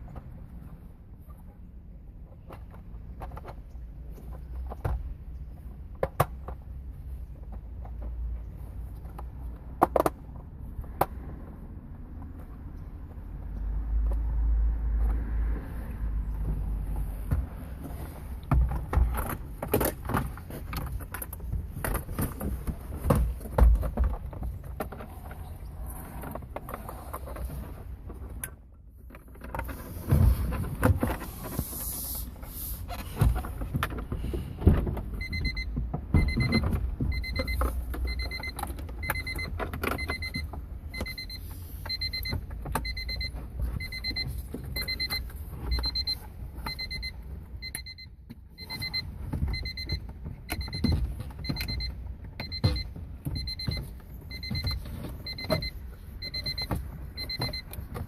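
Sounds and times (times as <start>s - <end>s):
car warning chime beeping: 35.2s - 58.0s.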